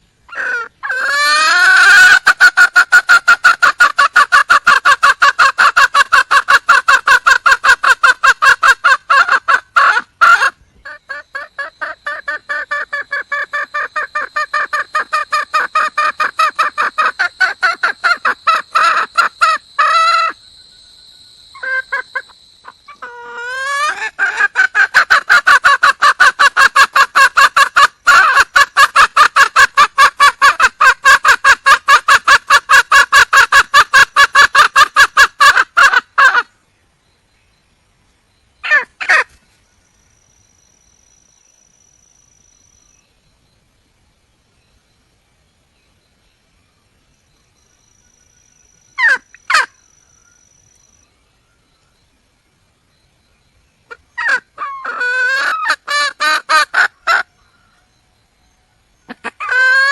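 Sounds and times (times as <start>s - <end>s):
hen clucking: 0.3s - 20.4s, 21.6s - 36.5s, 38.6s - 39.4s, 53.9s - 57.3s, 59.1s - 59.9s.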